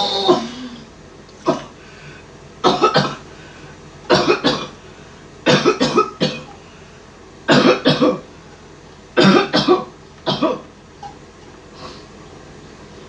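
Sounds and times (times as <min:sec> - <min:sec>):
person coughing: 0:00.0 - 0:01.8, 0:02.6 - 0:03.2, 0:04.1 - 0:04.8, 0:05.5 - 0:06.6, 0:07.5 - 0:08.2, 0:09.2 - 0:10.7.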